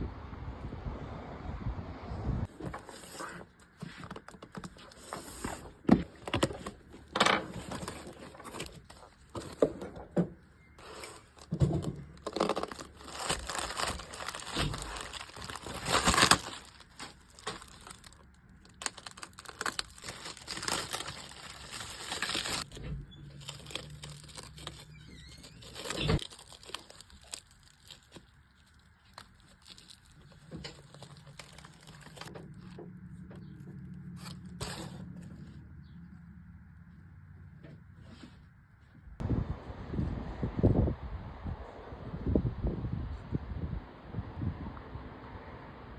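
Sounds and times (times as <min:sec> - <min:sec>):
packaging tearing and crinkling: 0:02.6 - 0:09.7, 0:10.8 - 0:32.8, 0:34.2 - 0:35.1.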